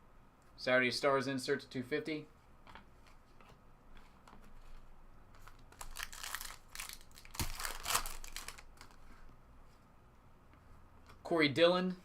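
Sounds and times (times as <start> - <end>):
wrapper tearing and crumpling: 5.7 - 9.0.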